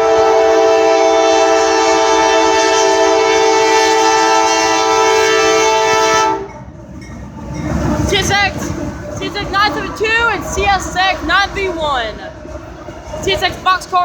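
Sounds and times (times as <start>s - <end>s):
train air horn blast: 0.0s - 6.6s
low rumble of moving train: 0.0s - 14.0s.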